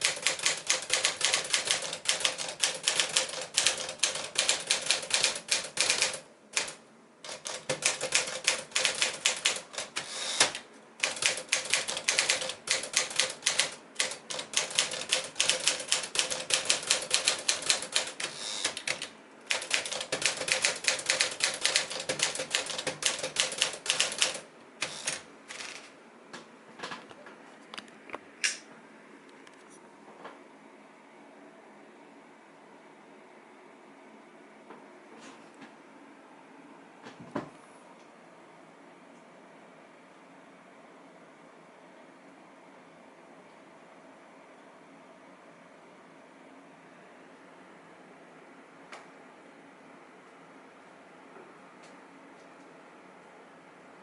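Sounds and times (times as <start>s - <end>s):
manual typewriter typing: 0.0s - 25.9s.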